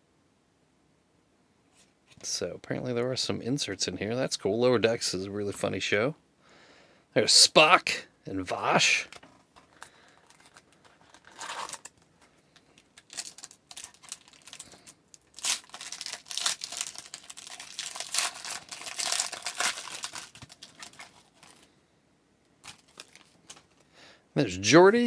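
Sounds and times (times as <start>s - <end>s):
plastic wrapper tearing and crinkling: 9.0s - 21.7s, 22.6s - 23.8s.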